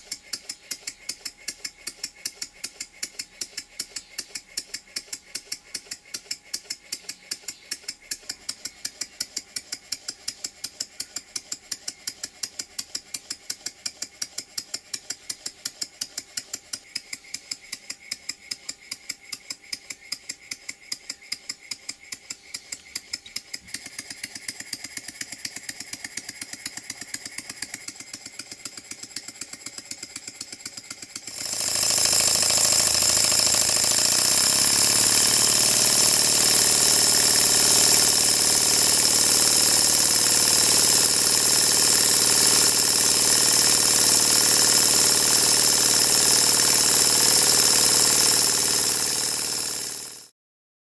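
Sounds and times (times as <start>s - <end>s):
model steam engine exhaust beating: 23.7s - 50.2s.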